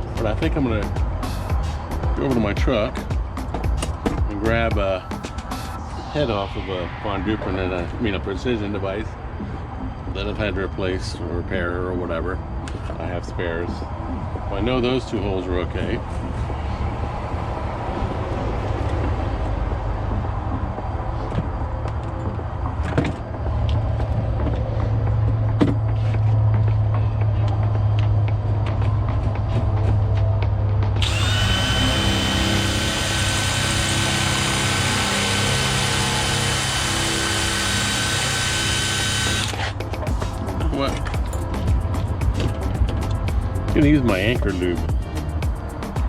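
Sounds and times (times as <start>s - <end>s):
electric drill whining: 31.0s - 39.8s.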